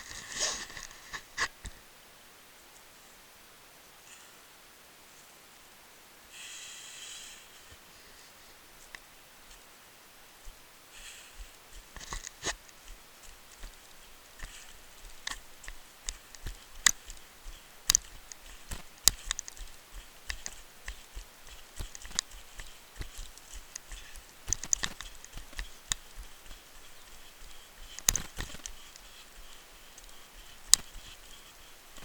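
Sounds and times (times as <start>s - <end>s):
footsteps on forest trail: 8.8s - 32.0s.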